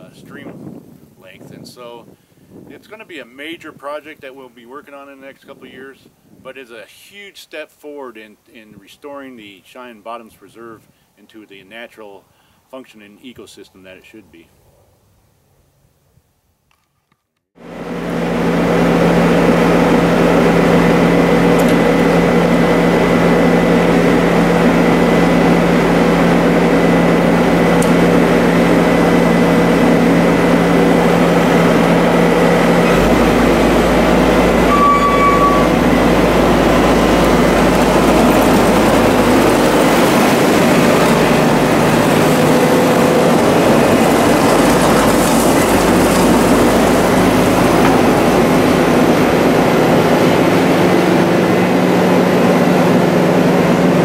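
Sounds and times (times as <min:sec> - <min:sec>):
heavy machinery engine droning: 0:17.6 - 0:54.0.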